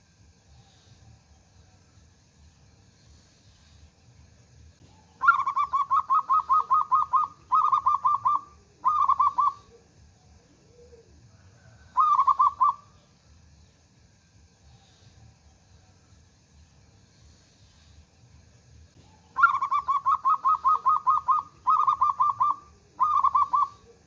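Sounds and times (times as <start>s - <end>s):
dove cooing: 4.9s - 12.9s, 19.0s - 24.0s.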